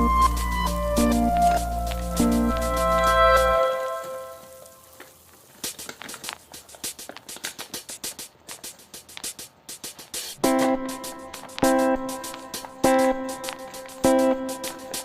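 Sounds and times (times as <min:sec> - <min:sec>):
plucked guitar music: 0:00.0 - 0:04.7, 0:10.4 - 0:15.0
background music: 0:00.0 - 0:04.9, 0:05.7 - 0:15.0
paper crackling while folded: 0:00.2 - 0:15.0.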